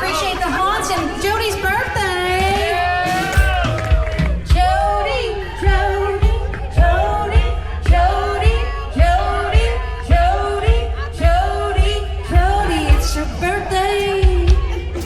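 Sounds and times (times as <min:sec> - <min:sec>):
pop song with singing: 0:00.0 - 0:15.0
low drum beat: 0:03.2 - 0:15.0.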